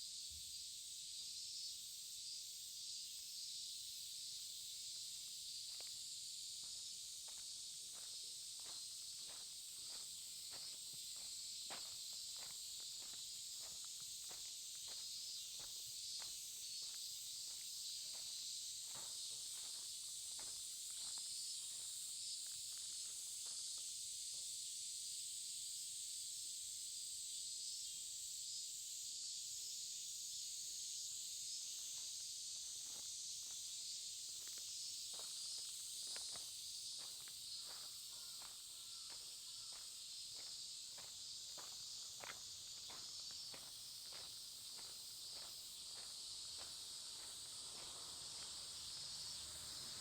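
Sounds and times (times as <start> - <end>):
insects chirring: 0.0 - 50.0
footsteps walking: 6.6 - 21.9, 34.4 - 49.2.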